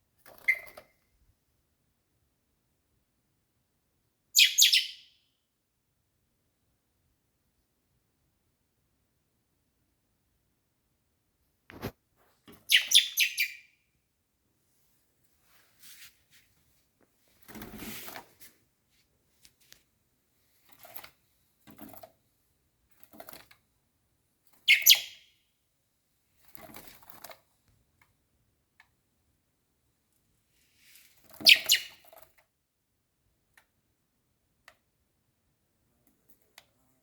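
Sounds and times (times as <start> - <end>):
young blackbird chirping: 4.4 - 5.1, 12.7 - 13.7, 24.7 - 25.3, 31.4 - 32.0
short rustling: 15.3 - 19.9.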